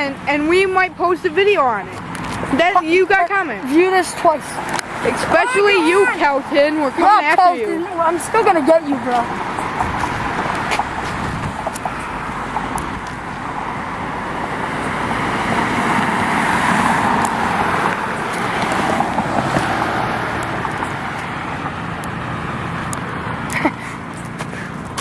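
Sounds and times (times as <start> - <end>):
car passing close by: 9.1 - 23.5.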